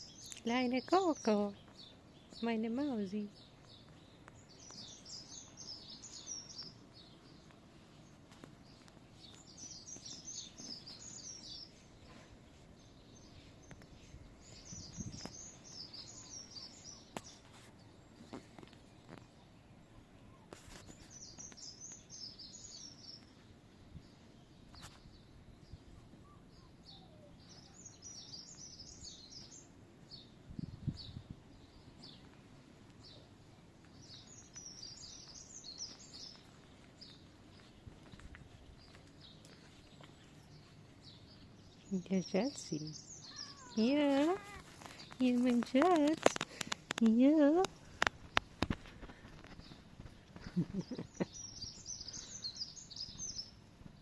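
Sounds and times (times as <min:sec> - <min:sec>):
faint outdoor background noise: 0:00.0 - 0:54.0
songbird chirping: 0:00.0 - 0:54.0.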